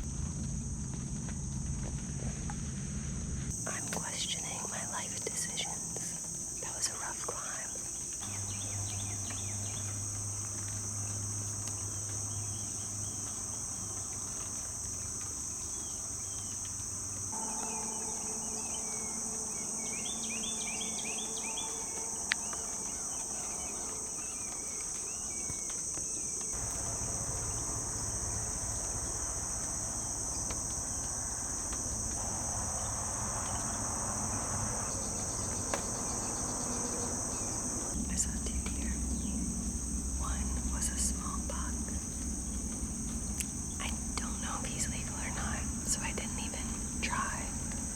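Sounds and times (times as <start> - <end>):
insects chorus: 0.0 - 47.9
short insect chirps: 0.0 - 47.9.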